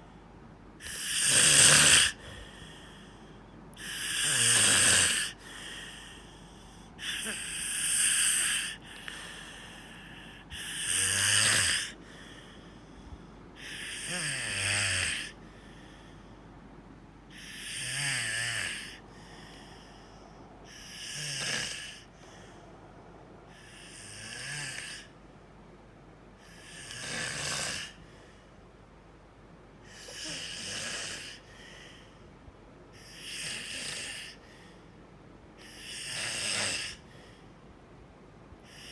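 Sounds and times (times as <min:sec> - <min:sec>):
person snoring: 0:00.8 - 0:03.2, 0:03.8 - 0:12.8, 0:13.6 - 0:15.8, 0:17.3 - 0:22.2, 0:23.5 - 0:25.1, 0:26.4 - 0:28.0, 0:29.9 - 0:32.1, 0:33.0 - 0:34.5, 0:35.6 - 0:37.3.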